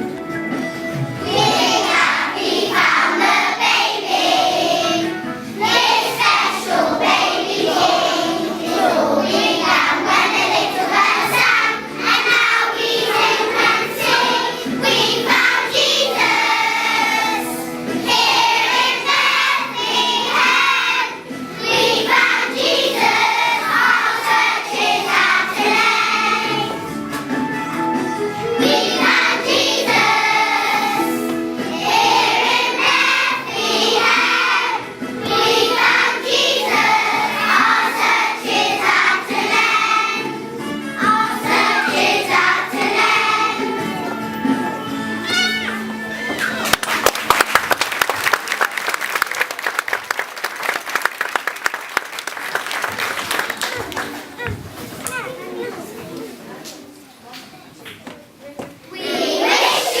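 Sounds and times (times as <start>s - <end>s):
instrumental accompaniment: 0.0s - 46.5s
choir singing with vibrato: 1.2s - 27.0s, 28.2s - 46.3s, 58.9s - 60.0s.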